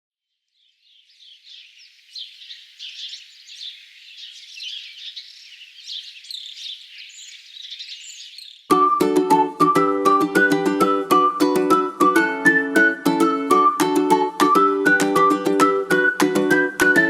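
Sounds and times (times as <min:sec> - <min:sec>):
birds chirping: 0:00.5 - 0:08.8
plucked string music: 0:08.7 - 0:17.0.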